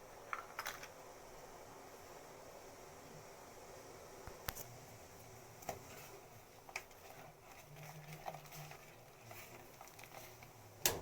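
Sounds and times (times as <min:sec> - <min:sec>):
water bubbling in a pot: 0:04.9 - 0:11.0.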